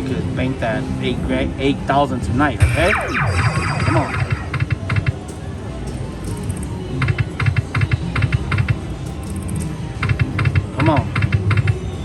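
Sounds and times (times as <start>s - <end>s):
slot machine game music: 2.6s - 6.5s.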